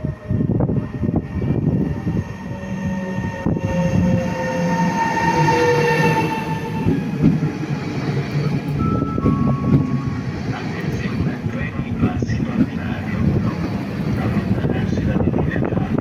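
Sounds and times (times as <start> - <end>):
train whine falling in pitch: 0.0 - 10.4
train wheels rumbling on rails: 0.0 - 16.0.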